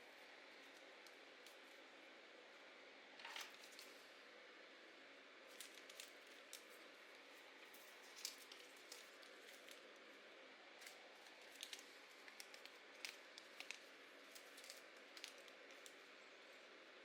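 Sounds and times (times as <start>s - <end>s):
paper rustling: 7.6s - 9.8s, 10.8s - 16.0s.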